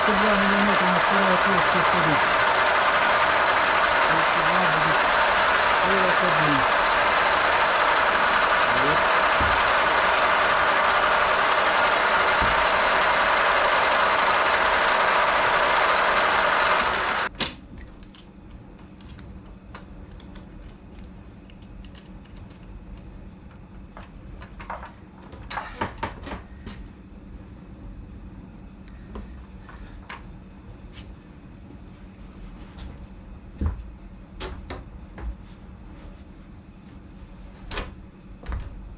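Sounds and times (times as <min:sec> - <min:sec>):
machine tool humming: 0:00.0 - 0:17.3.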